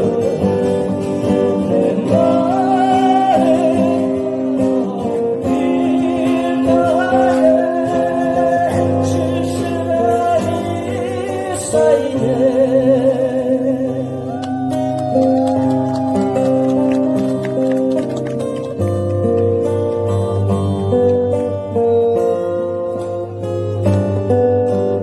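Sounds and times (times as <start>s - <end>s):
person singing with vibrato: 0.0s - 15.3s
acoustic guitar: 0.0s - 25.0s.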